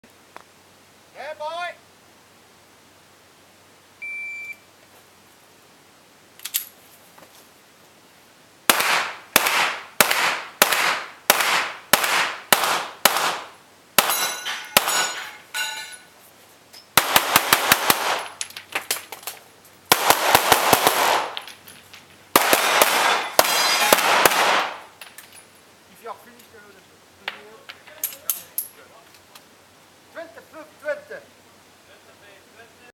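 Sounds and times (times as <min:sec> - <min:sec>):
short electronic beep: 0:04.0 - 0:04.6
pistol shots: 0:08.7 - 0:15.2, 0:17.0 - 0:18.4, 0:19.9 - 0:21.5, 0:22.3 - 0:24.9.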